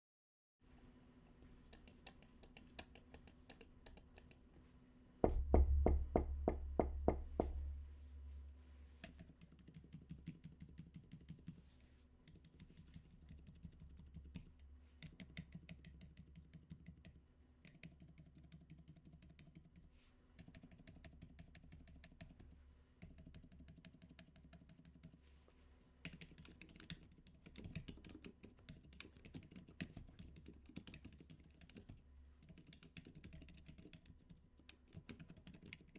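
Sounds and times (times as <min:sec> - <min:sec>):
mechanical keyboard typing: 0:26.2 - 0:35.9.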